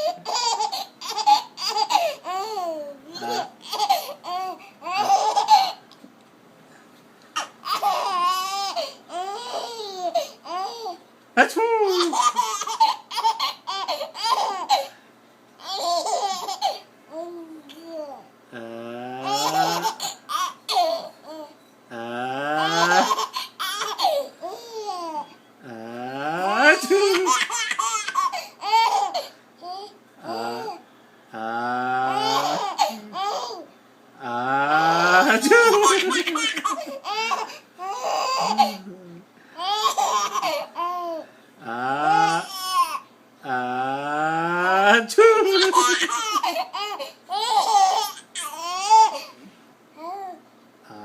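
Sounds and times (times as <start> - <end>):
baby laughing: 0.0 - 5.8, 7.4 - 11.0, 11.9 - 14.9, 15.6 - 18.2, 19.2 - 21.5, 22.6 - 25.3, 26.4 - 29.9, 32.1 - 33.6, 35.0 - 38.8, 39.6 - 41.2, 45.0 - 49.3.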